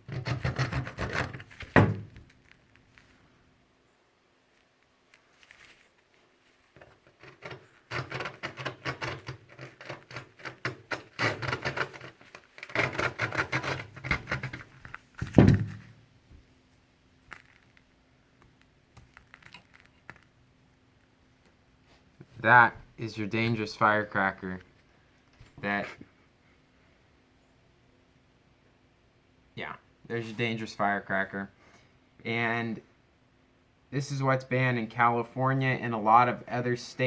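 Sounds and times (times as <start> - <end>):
saw cutting cardboard tube: 0.0 - 2.2, 6.8 - 15.8.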